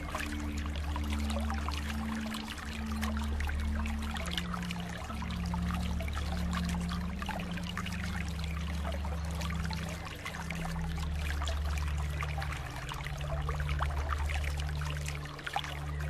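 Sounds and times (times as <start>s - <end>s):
low hum shifting in pitch: 0.0s - 16.0s
water flowing and trickling: 0.0s - 16.0s.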